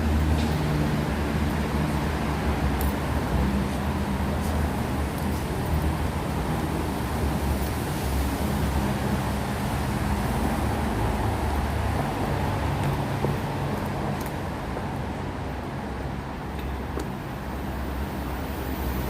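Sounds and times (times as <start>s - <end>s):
low rumble of traffic: 0.0s - 19.0s.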